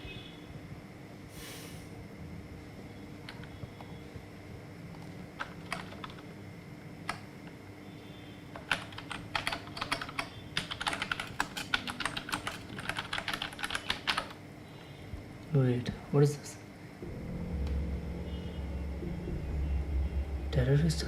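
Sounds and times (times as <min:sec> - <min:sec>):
faint steady hum: 0:00.0 - 0:21.0
typing on computer keyboard: 0:05.0 - 0:06.3, 0:08.5 - 0:14.4.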